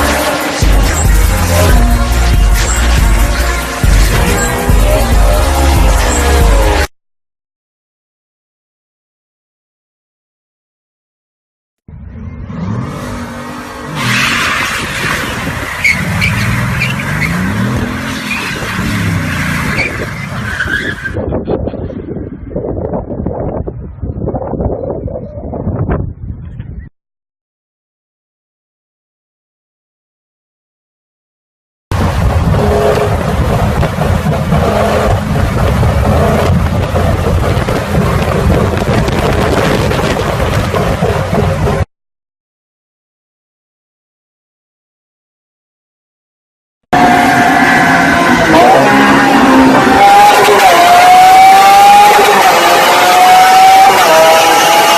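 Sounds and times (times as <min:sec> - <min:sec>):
car engine revving: 0:00.0 - 0:06.9, 0:12.0 - 0:20.7, 0:31.9 - 0:41.9, 0:47.0 - 0:54.9
tyres squealing and skidding: 0:00.0 - 0:06.9, 0:12.4 - 0:21.3, 0:47.0 - 0:54.9.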